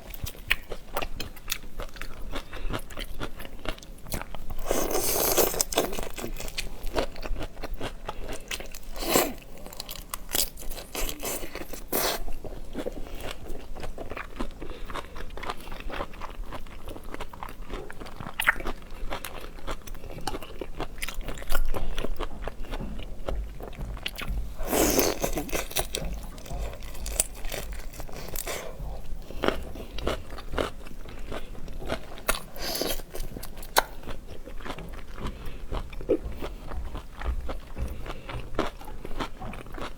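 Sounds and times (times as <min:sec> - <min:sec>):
chewing and crunching seafood: 0:00.0 - 0:39.9.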